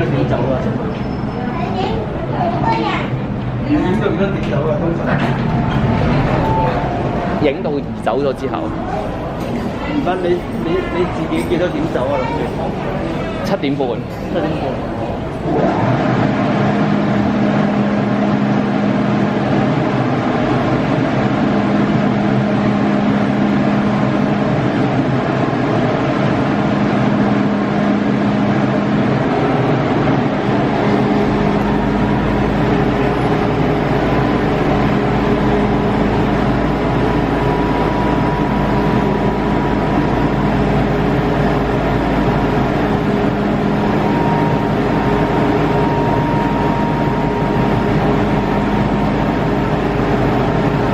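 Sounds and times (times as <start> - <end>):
deep train rumble: 0.0 - 50.9
electrical humming tones: 0.0 - 50.9
train rail running noise: 0.0 - 50.9.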